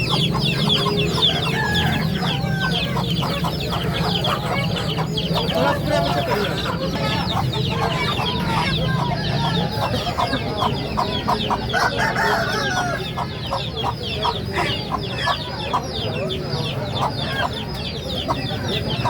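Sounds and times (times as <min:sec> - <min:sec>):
chickens clucking: 0:00.0 - 0:19.0.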